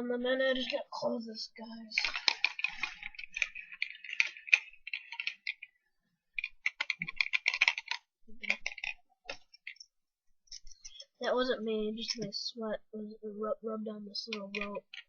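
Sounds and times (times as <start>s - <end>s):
laptop keyboard clicking: 6.4s - 9.8s.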